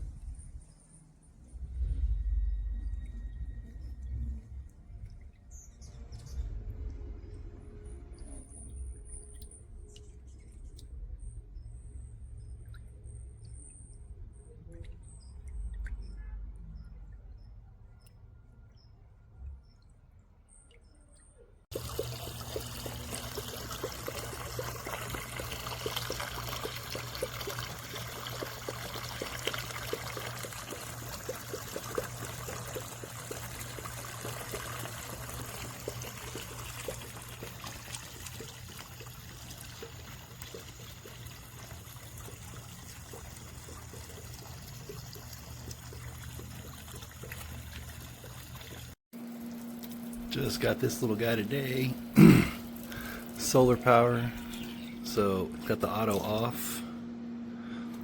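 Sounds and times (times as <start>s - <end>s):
low pump hum: 0.0s - 58.0s
fountain water trickling: 3.0s - 7.2s, 21.7s - 56.8s.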